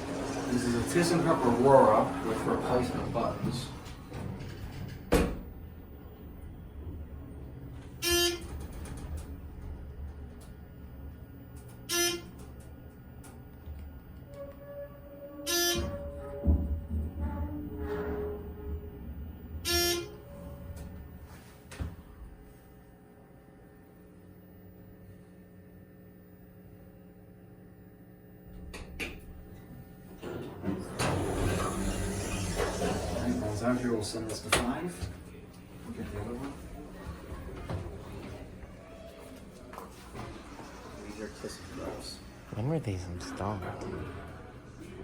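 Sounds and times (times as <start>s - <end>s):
elevator buzzer: 0.0s - 38.7s
elevator car hum: 0.0s - 45.0s
rush of mechanical noise: 30.8s - 33.8s.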